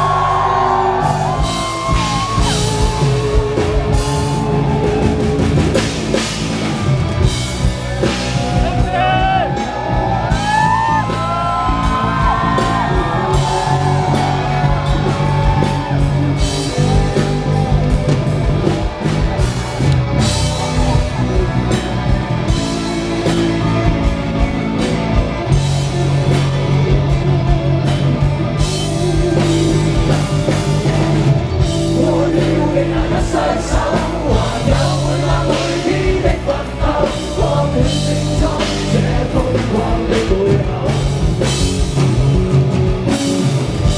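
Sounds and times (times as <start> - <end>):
voices singing or shouting: 0.0 - 22.1, 29.0 - 41.7
live rock band playing: 0.0 - 43.9
sliding lead guitar line: 0.0 - 43.9.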